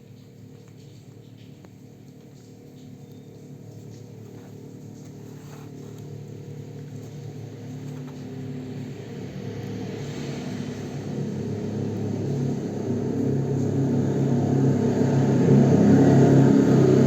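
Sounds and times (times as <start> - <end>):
low held drone chords: 9.0 - 17.0.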